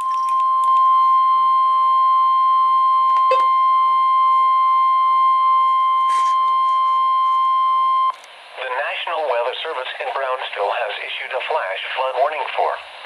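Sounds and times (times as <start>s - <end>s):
steady high alarm tone: 0.0s - 8.2s.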